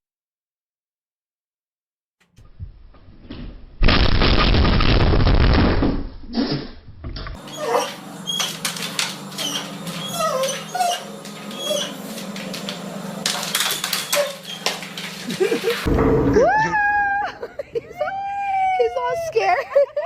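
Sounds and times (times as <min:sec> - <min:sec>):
dog whimpering and yipping: 0:07.5 - 0:08.6, 0:09.4 - 0:12.1, 0:13.9 - 0:14.7.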